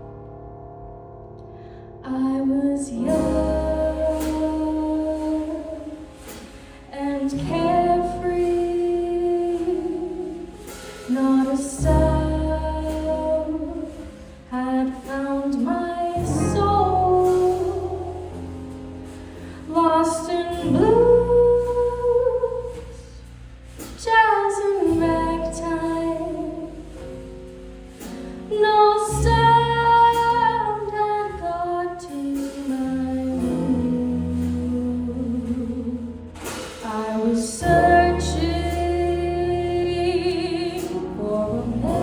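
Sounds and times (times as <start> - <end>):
woman singing jazz ballad: 2.0 - 42.0
small jazz group playing: 2.6 - 42.0.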